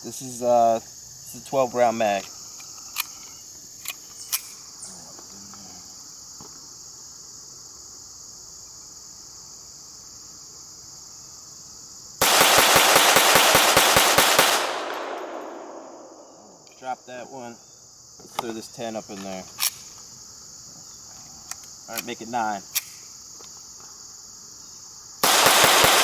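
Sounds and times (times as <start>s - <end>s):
insects chirping: 0.0s - 26.0s
pistol firing rapid shots: 12.2s - 16.5s, 25.2s - 26.0s.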